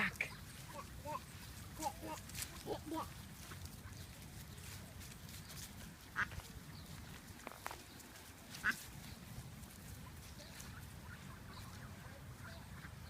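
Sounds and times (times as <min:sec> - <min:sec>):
ducks quacking: 0:00.0 - 0:04.2, 0:06.0 - 0:06.5, 0:08.5 - 0:08.9, 0:10.0 - 0:13.0.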